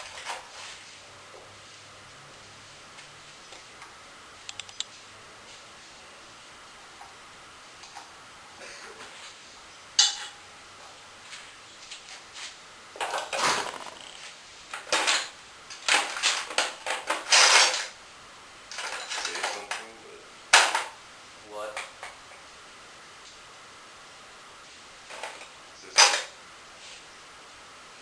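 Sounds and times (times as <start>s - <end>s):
sharp metal clank: 10.0s - 10.4s.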